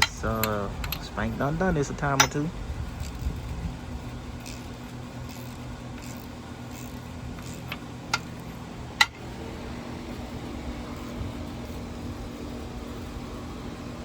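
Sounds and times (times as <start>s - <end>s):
steady low hum: 0.0s - 14.0s
sharp metal wrench clicks: 2.2s - 3.4s, 4.4s - 4.7s, 5.3s - 9.2s.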